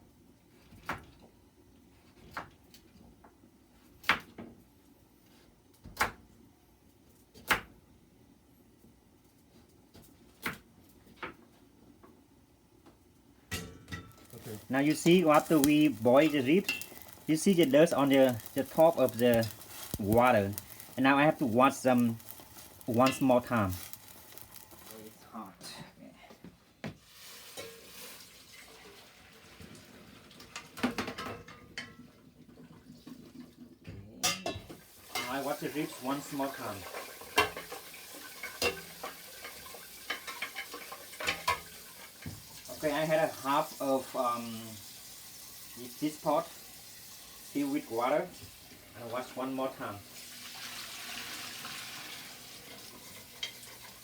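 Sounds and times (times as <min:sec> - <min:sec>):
metal pot and utensils clattering: 0:13.5 - 0:24.9, 0:27.4 - 0:29.1, 0:30.3 - 0:32.7, 0:34.2 - 0:42.7, 0:50.5 - 0:54.0.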